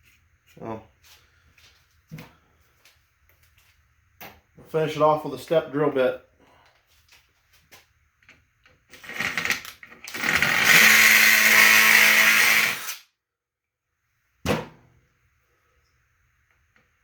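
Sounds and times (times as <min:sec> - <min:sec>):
electric drill drilling sheet metal: 0:08.9 - 0:13.1.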